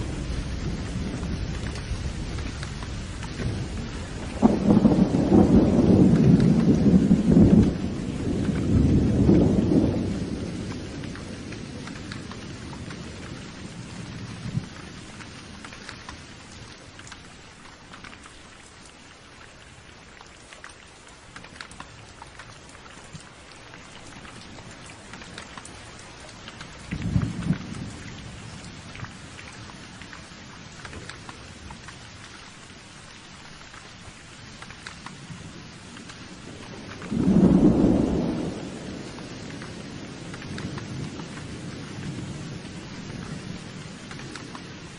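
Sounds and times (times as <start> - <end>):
thunder rumbling: 0.0 - 16.4, 23.8 - 32.2, 34.1 - 44.9
heavy rain: 0.0 - 44.9.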